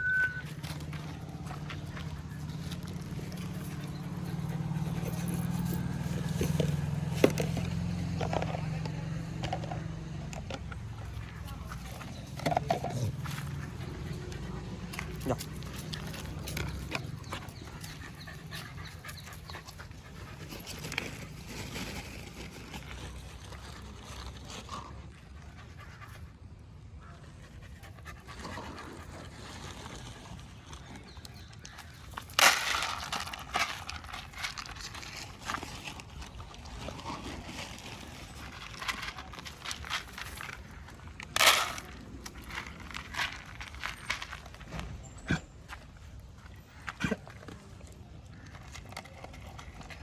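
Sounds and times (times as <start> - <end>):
dog panting: 12.8 - 21.3.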